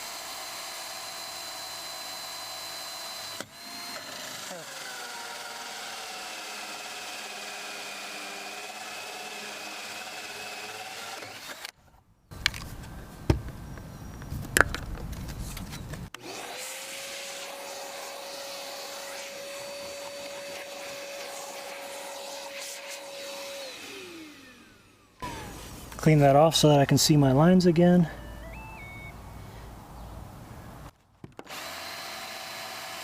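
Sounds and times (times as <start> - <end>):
power drill motor whine: 0.0 - 11.8, 16.2 - 26.0, 28.2 - 29.2, 31.4 - 33.0
hole saw grinding with clicks: 0.1 - 11.8, 31.4 - 33.0.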